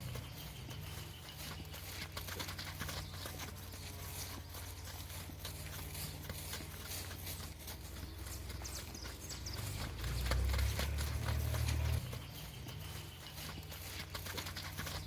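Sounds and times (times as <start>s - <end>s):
horse hooves clip-clopping: 0.0s - 15.0s
steady low hum: 0.0s - 15.0s.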